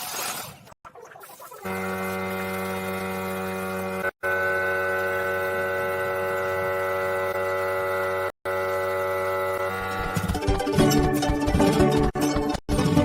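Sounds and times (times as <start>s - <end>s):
steady hum of held tones: 1.7s - 10.3s.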